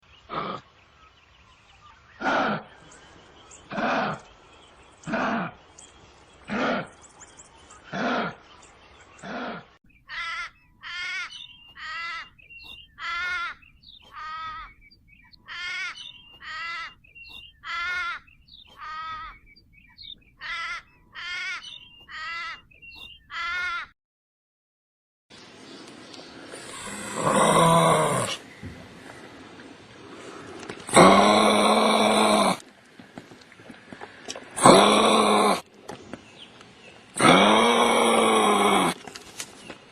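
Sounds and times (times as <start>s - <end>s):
kangaroo grunting: 0.3s - 0.7s, 2.2s - 2.9s, 3.7s - 4.3s, 5.0s - 5.6s, 6.5s - 7.0s, 7.9s - 8.5s, 9.2s - 10.3s, 26.5s - 28.5s, 30.8s - 32.6s, 34.6s - 35.6s, 37.2s - 39.0s.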